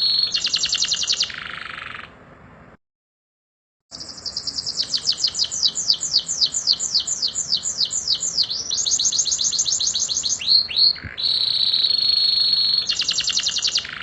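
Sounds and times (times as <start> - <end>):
canary trilling: 0.0 - 2.2, 3.9 - 14.0.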